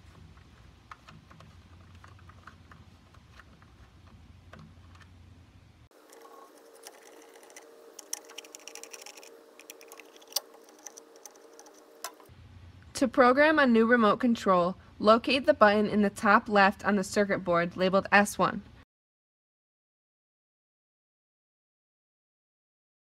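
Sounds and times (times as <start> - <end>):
faint steady hum: 0.0 - 18.8
screwdriver clicks and ticks: 6.1 - 12.3.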